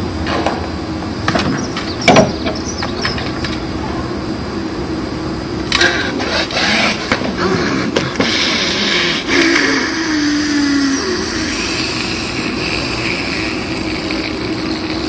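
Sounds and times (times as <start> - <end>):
steady background hum: 0.0 - 15.0
person gasping: 7.4 - 13.8.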